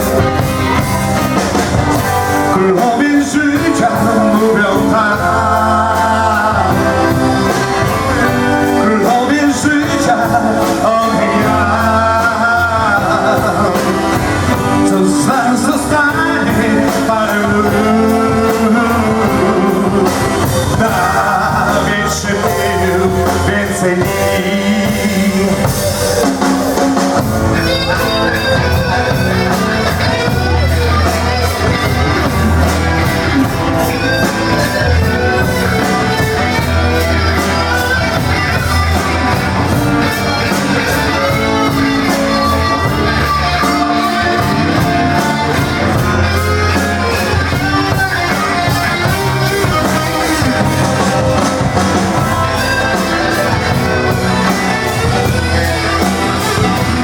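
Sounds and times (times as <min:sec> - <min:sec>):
bass guitar: 0:00.0 - 0:57.0
lead guitar: 0:00.0 - 0:57.0
steady drum beat: 0:00.0 - 0:57.0.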